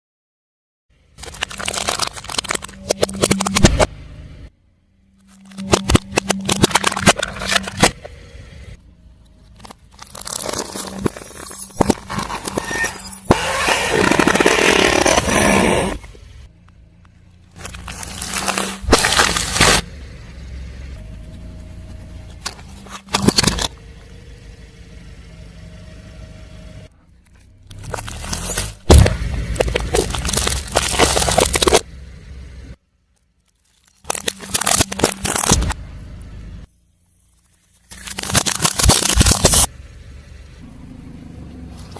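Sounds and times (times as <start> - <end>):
car hum: 0.9 - 41.9
brittle objects crackling under tyre: 1.1 - 3.9, 5.2 - 8.0, 9.3 - 16.1, 17.0 - 19.9, 27.2 - 31.9, 33.1 - 35.8, 37.0 - 39.7.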